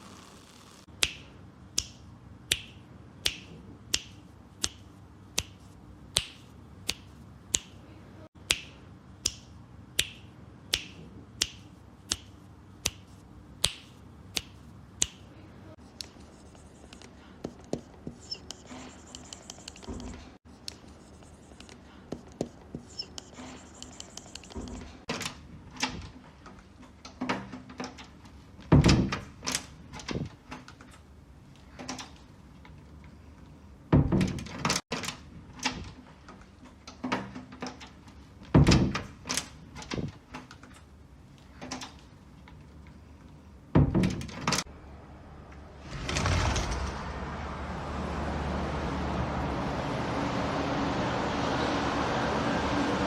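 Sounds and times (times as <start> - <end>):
sharp knocks and thuds: 38.5 - 39.1.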